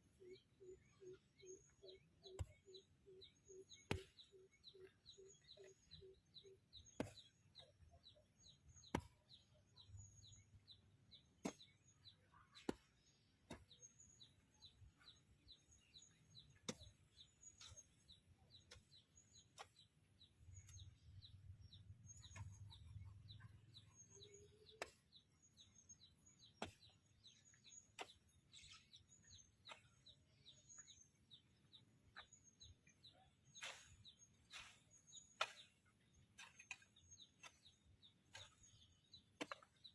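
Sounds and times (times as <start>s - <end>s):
small bird chirping: 0.0s - 39.9s.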